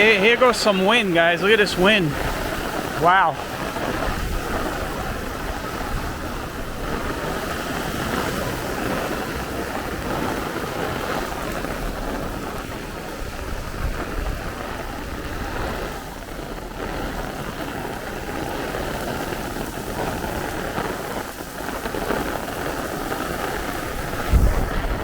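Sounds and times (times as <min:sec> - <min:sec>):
heavy rain hiss: 0:00.0 - 0:25.0
wind gusts rumbling: 0:00.0 - 0:25.0.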